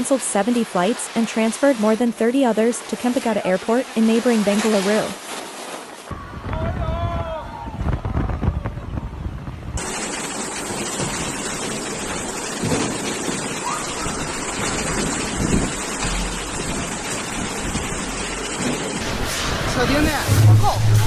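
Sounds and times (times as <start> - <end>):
strong wind buffeting microphone: 6.1 - 9.8.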